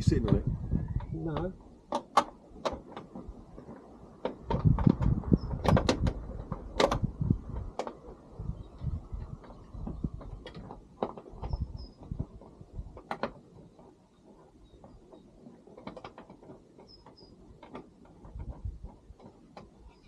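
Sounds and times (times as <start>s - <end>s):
low handling bumps: 0.0s - 20.0s.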